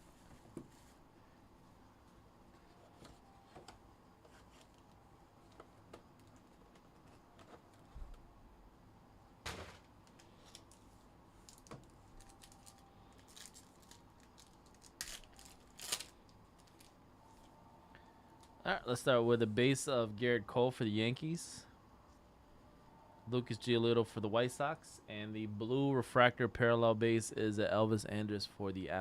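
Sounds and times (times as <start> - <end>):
card packaging clicks and crinkles: 11.4 - 17.0.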